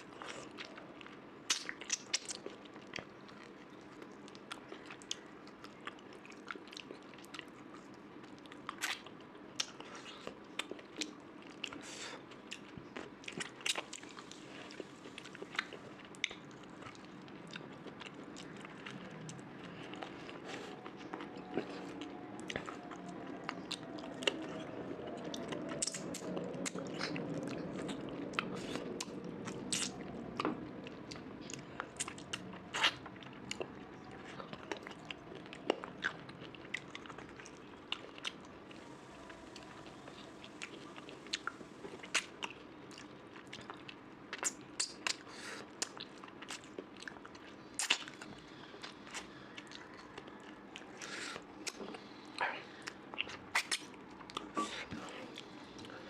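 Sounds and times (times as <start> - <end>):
person chewing food: 0.0 - 56.0
mouth clicks and smacks: 1.4 - 3.1, 15.3 - 38.4, 40.6 - 47.2, 47.8 - 50.3, 51.0 - 55.9.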